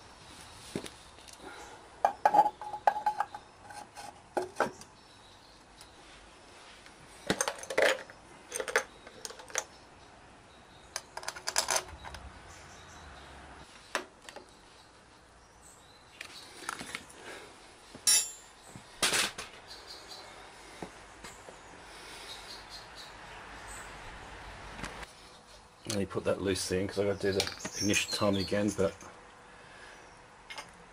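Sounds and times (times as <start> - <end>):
metal tools clinking: 7.3 - 9.7, 11.0 - 12.1, 18.0 - 19.5.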